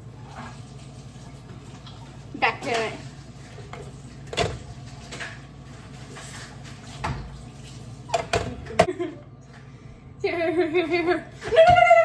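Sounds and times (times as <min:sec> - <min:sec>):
dishes and utensils clattering: 0:03.6 - 0:09.0.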